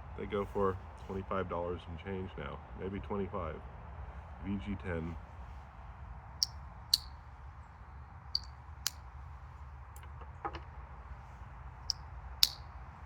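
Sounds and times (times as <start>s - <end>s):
pocketknife blades snapping shut: 12.4s - 12.6s.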